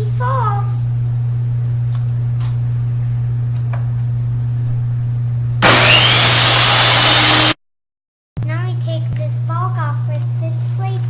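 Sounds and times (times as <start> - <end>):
low hum: 0.0 - 7.5
table saw whining: 5.6 - 7.6.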